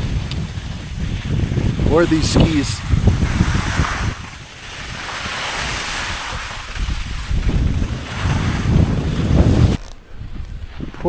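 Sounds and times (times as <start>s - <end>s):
wind buffeting microphone: 0.0s - 11.0s
skis hissing through slushy snow: 2.0s - 9.7s.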